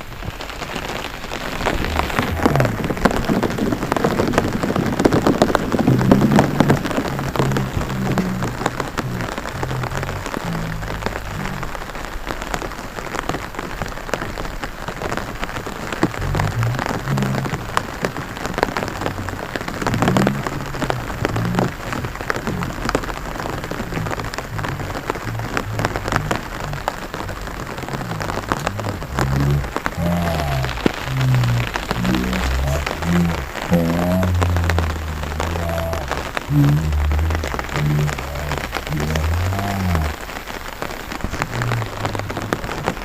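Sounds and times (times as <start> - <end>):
rain on standing water: 0.0 - 43.0
sharp water drips: 0.0 - 43.0.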